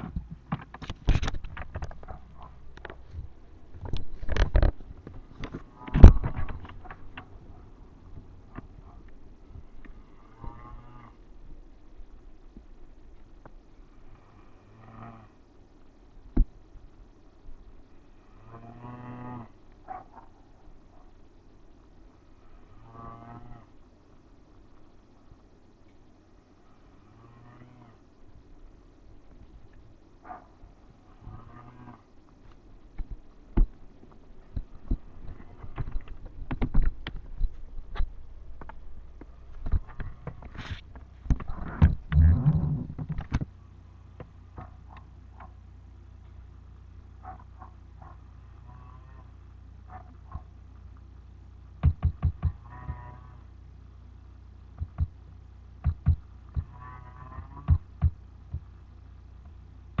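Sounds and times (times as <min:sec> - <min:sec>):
sharp clicks and knocks: 0:00.0 - 0:07.4, 0:32.5 - 0:43.5, 0:51.8 - 0:53.0, 0:54.8 - 0:55.2, 0:55.8 - 0:56.8, 0:57.4 - 0:58.7
steady low hum: 0:00.0 - 1:00.0
person snoring heavily: 0:14.1 - 0:15.4.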